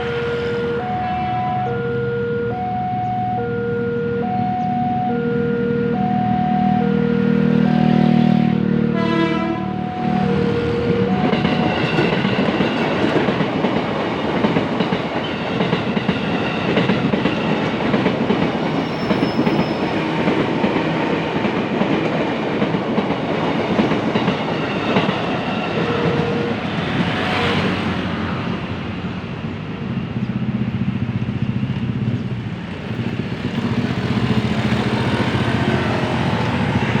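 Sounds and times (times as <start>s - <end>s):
train wheels clattering over rails: 10.4s - 28.1s, 29.9s - 37.0s.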